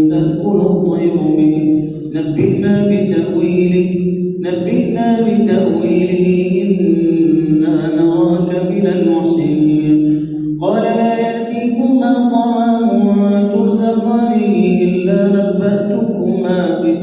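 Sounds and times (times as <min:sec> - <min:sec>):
man chanting: 0:00.0 - 0:17.0.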